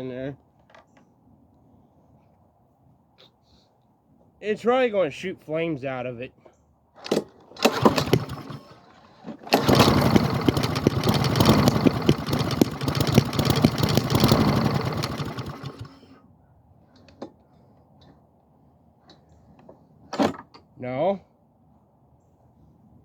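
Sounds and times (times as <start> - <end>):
lawn mower engine starting and running: 7.0 - 16.2.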